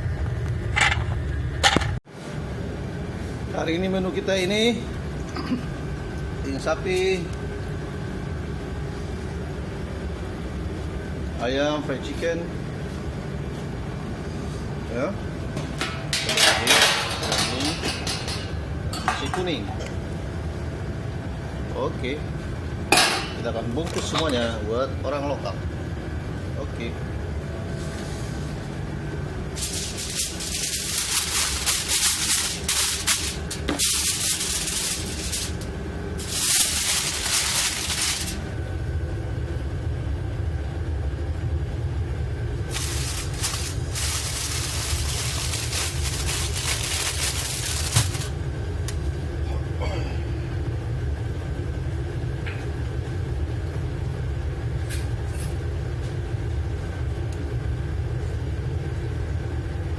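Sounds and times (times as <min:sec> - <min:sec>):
low machinery rumble: 0:00.0 - 0:06.6, 0:07.5 - 0:59.9
hissing bursts: 0:29.6 - 0:38.5.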